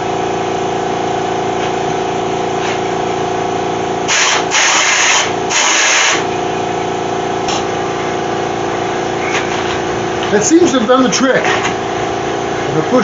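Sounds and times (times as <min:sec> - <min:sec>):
steady hum: 0:00.0 - 0:13.0
compressed air hissing blasts: 0:04.1 - 0:06.3.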